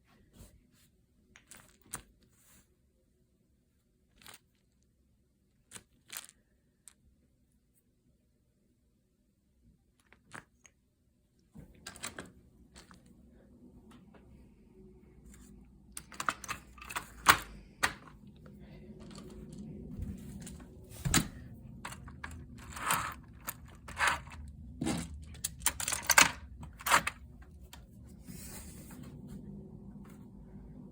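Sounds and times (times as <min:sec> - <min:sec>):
low steady hum: 0:06.3 - 0:30.9.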